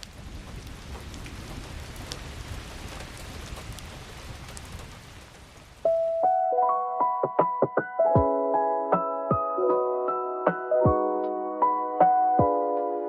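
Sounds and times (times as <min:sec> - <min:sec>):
rain drops ticking: 0:00.0 - 0:06.5
steady rain falling: 0:00.0 - 0:06.5.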